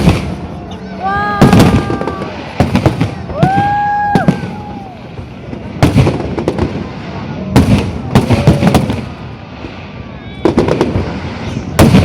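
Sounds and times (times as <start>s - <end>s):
fireworks bangs: 0.0s - 12.0s
person exclaiming high-pitched: 0.9s - 2.3s.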